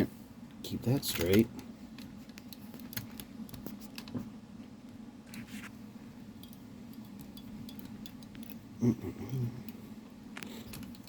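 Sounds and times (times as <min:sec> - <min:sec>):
steady low hum: 0:00.0 - 0:11.0
small screws and plastic parts clicking: 0:01.1 - 0:04.2, 0:06.4 - 0:08.6, 0:10.4 - 0:11.0.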